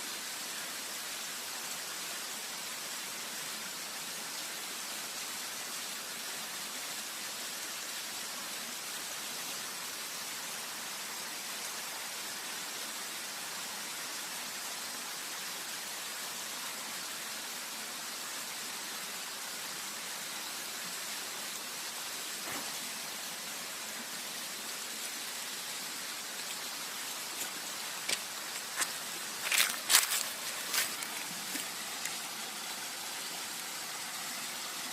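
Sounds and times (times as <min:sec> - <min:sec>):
river water rushing: 0:18.8 - 0:34.9.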